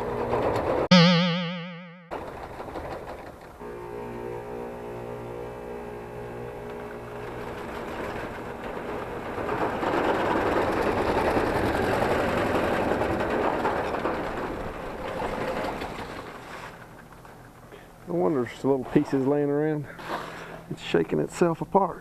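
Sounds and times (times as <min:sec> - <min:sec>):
condenser fan rattling: 0:02.3 - 0:18.8.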